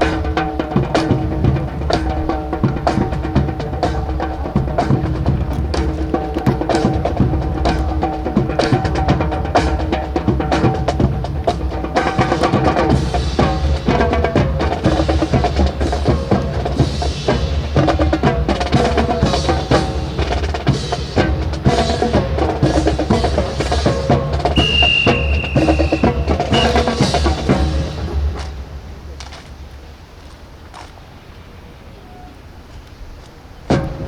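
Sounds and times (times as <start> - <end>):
marching drum and band music: 0.0 - 29.8, 33.6 - 34.0
short high steady tone: 24.6 - 27.1.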